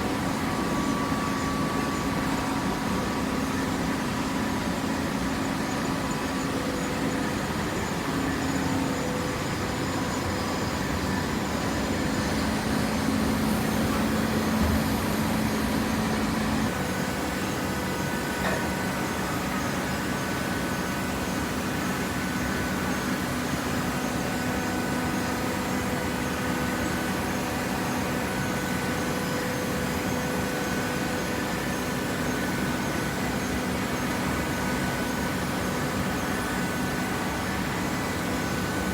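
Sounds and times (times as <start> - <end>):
baling press machinery humming: 0.0 - 23.4.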